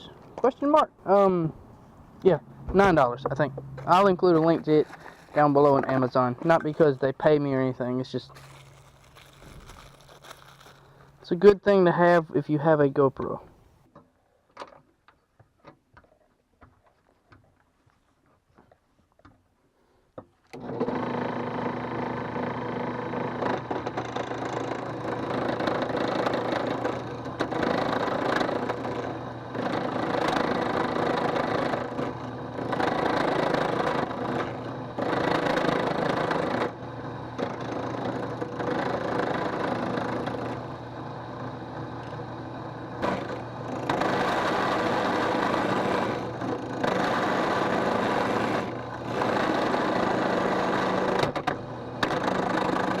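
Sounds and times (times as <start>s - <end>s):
tool scraping spinning wood: 2.3s - 11.6s, 20.6s - 53.0s
drill press motor hum: 20.5s - 53.0s.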